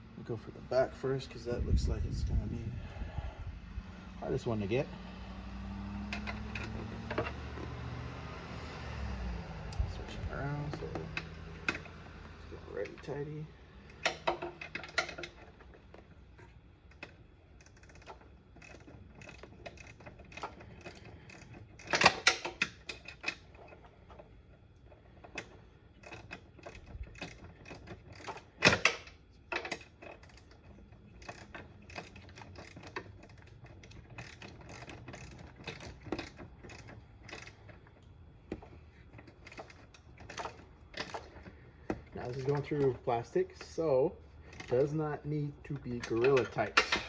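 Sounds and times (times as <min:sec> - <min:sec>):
hand ratchet clicking: 0:16.9 - 0:23.8, 0:25.2 - 0:37.9.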